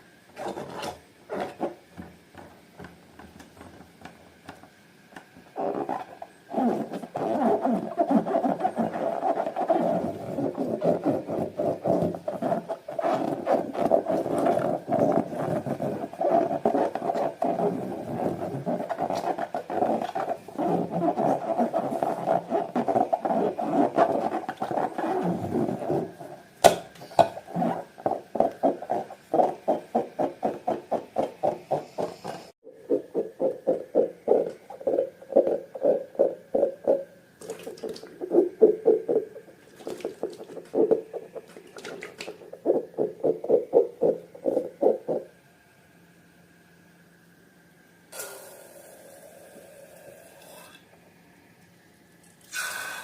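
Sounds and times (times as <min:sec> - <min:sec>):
slime squelching: 0:32.9 - 0:45.2.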